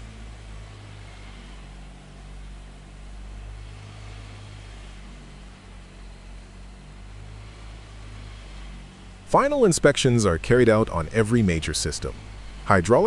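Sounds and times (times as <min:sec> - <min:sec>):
engine humming: 0:00.0 - 0:13.0.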